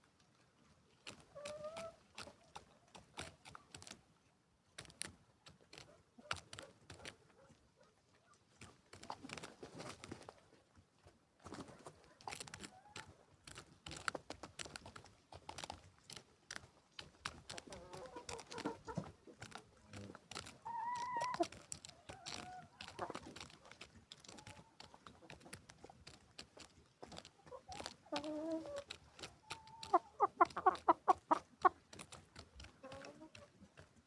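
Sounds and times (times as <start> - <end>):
chickens pecking clicks: 0.9 - 7.6, 8.5 - 34.0
chickens clucking: 1.3 - 2.0, 17.4 - 26.0, 27.0 - 33.9.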